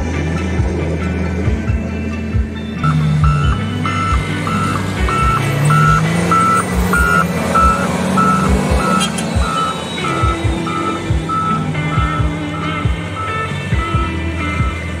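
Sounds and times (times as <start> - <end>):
diesel engine: 0.0 - 15.0
low thumps: 0.0 - 15.0
back-up alarm beeping: 2.8 - 15.0.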